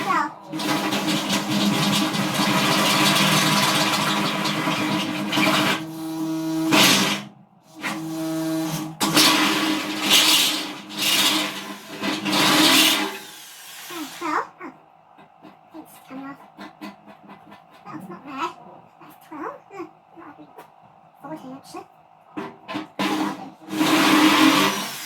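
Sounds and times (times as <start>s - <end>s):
electric drill boring into metal: 0.6s - 14.2s, 23.0s - 25.0s.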